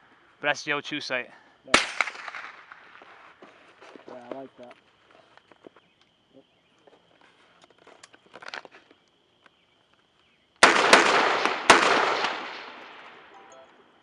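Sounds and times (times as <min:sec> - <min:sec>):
gunshots with rolling echo: 0:01.7 - 0:03.3, 0:10.6 - 0:13.4.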